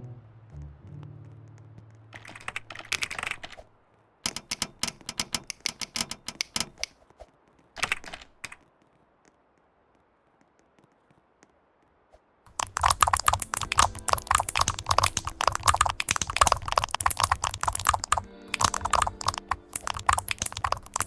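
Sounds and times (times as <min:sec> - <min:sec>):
typing on computer keyboard: 0:02.2 - 0:03.7, 0:04.3 - 0:06.9, 0:07.8 - 0:08.6, 0:12.5 - 0:21.0.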